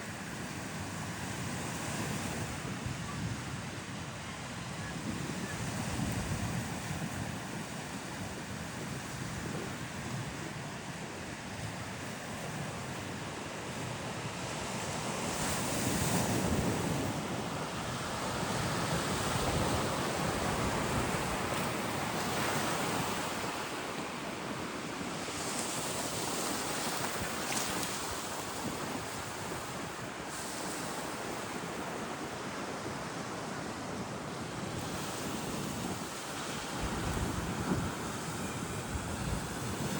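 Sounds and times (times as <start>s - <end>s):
waves breaking on a beach: 0.0s - 39.9s.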